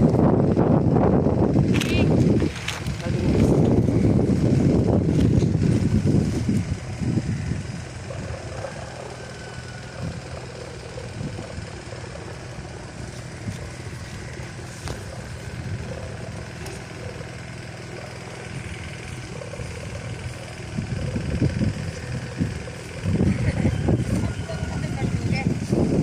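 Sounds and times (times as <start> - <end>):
wind rushing over microphone: 0.0 - 9.0, 18.5 - 26.0
kite hummer droning: 0.0 - 26.0.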